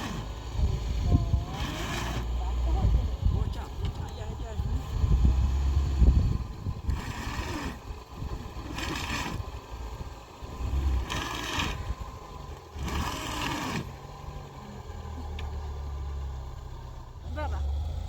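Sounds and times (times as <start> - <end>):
rough scraping strokes: 0.0 - 0.5, 1.3 - 3.0, 6.8 - 14.4
low steady rumble: 0.0 - 18.0.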